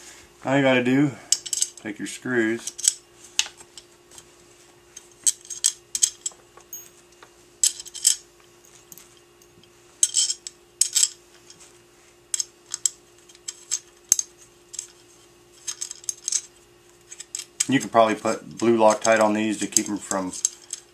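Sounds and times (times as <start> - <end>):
screws and wrench clinking on metal: 1.3 - 3.0, 5.0 - 7.0, 7.6 - 11.6, 12.3 - 20.9.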